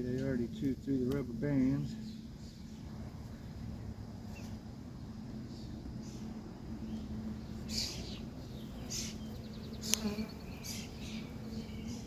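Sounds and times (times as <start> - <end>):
honeybees buzzing: 5.0 - 12.0.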